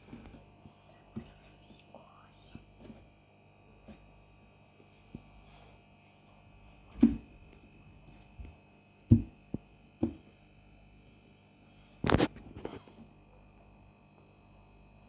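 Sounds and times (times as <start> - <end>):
electrical hum: 0.0 - 15.0
dull thumps: 6.9 - 7.4, 8.4 - 10.3.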